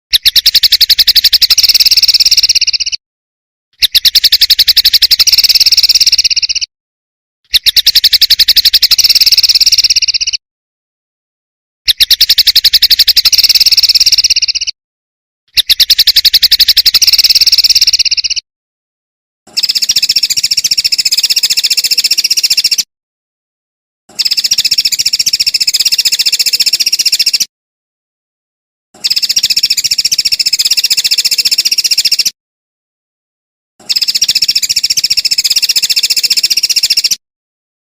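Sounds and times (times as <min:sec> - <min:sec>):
songbird singing fast trills: 0:00.2 - 0:03.0, 0:03.8 - 0:06.7, 0:07.5 - 0:10.4, 0:11.9 - 0:14.8, 0:15.5 - 0:18.4, 0:19.5 - 0:22.9, 0:24.1 - 0:27.5, 0:29.0 - 0:32.4, 0:33.8 - 0:37.2.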